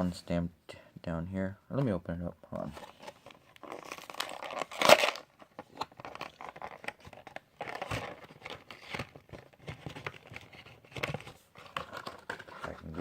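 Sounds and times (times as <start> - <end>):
plastic packaging crinkling and tearing: 2.9 - 9.4.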